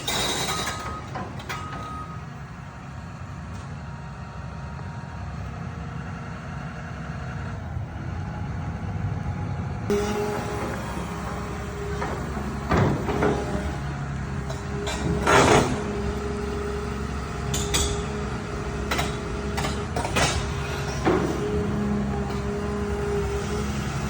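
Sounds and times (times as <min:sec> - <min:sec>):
diesel engine running: 0:00.0 - 0:24.0
metallic clanks and knocks: 0:10.6 - 0:16.2, 0:17.5 - 0:21.7.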